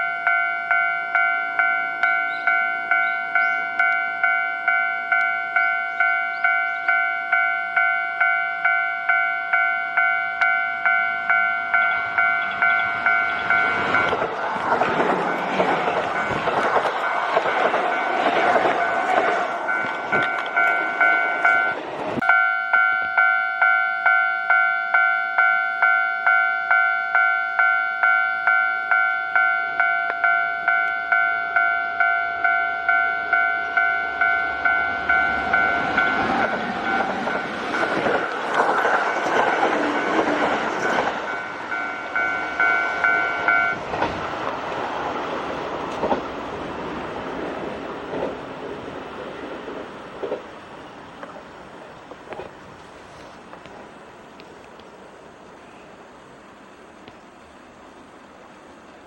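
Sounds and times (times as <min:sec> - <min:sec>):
level-crossing alarm bell ringing: 0:00.0 - 0:43.8
train rumbling past: 0:00.0 - 0:59.0
train wheel clatter: 0:10.4 - 0:22.3, 0:33.7 - 0:54.9.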